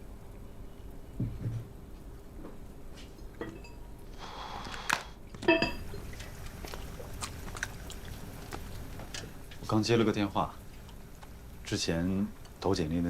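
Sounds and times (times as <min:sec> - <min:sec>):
dishes and utensils clinking: 0:05.4 - 0:06.0.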